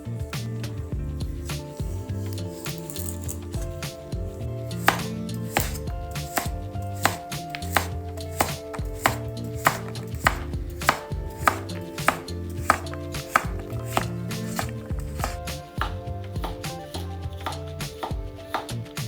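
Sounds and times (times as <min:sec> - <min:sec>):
knife chopping vegetables on board: 0:04.8 - 0:18.8.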